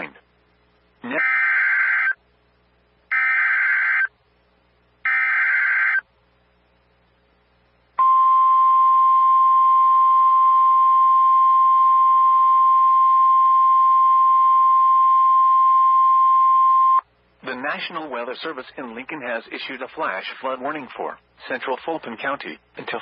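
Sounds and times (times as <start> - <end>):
steady alarm tone: 1.1 - 2.2, 3.1 - 4.2, 5.0 - 6.1
digital header bursts: 3.1 - 4.1, 5.1 - 6.0.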